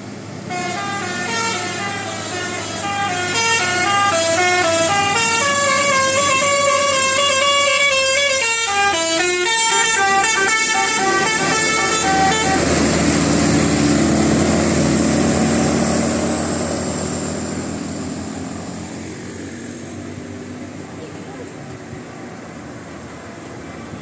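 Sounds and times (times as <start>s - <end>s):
bus engine running: 0.0s - 24.0s
musical bus horn playing tune: 0.4s - 13.7s.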